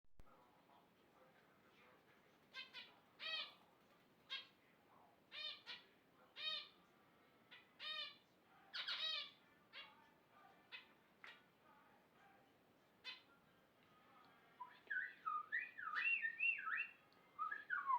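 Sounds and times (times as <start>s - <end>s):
pet birds calling: 2.5s - 3.6s, 7.5s - 9.9s, 14.6s - 17.9s.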